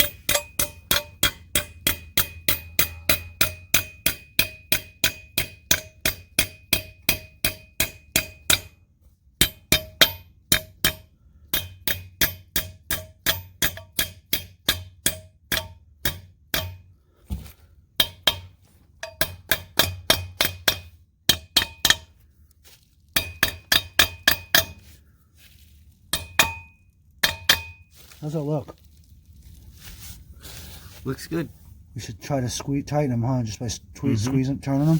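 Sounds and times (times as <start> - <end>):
hammer blows on steel anchor: 0.0 - 8.8.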